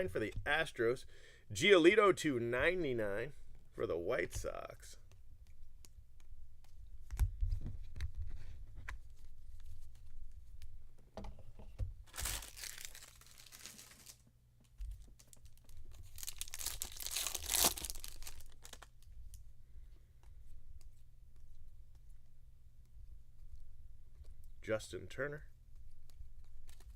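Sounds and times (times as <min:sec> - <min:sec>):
foil wrappers tearing: 0:12.1 - 0:14.2, 0:15.2 - 0:19.0.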